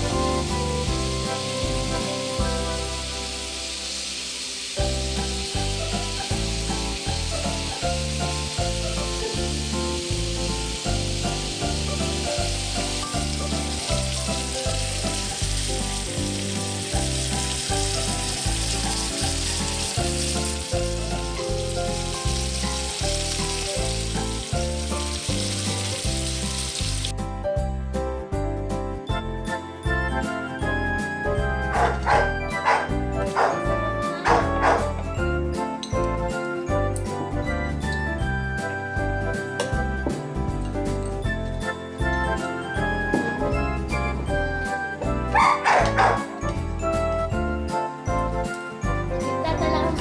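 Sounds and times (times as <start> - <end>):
food sizzling in a pan: 0.0 - 27.1
background music with steady beat: 26.2 - 50.0.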